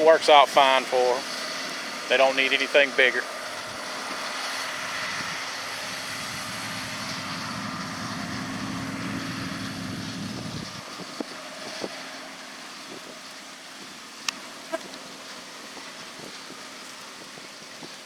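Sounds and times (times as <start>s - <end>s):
diesel engine rumble: 0.0s - 14.0s.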